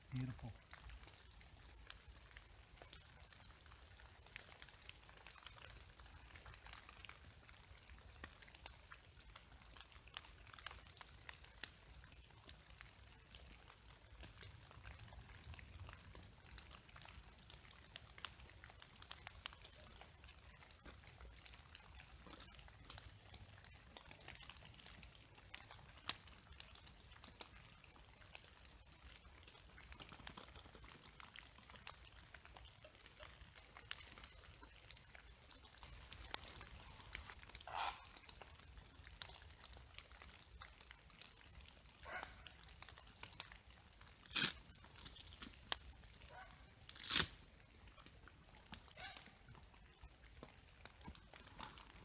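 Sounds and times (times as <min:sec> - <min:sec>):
raindrops falling through trees: 0:00.0 - 0:52.0
short animal calls: 0:37.7 - 0:38.1.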